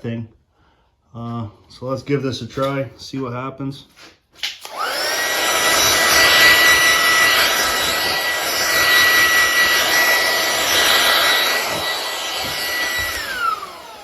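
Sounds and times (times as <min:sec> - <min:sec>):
high-pitched motor whine: 0:04.7 - 0:14.0
rushing air: 0:04.9 - 0:14.0.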